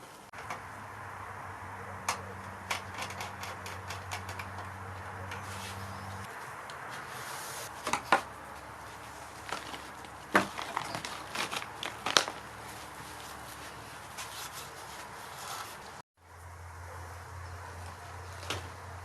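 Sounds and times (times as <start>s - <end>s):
sharp clicks and knocks: 2.0s - 5.4s.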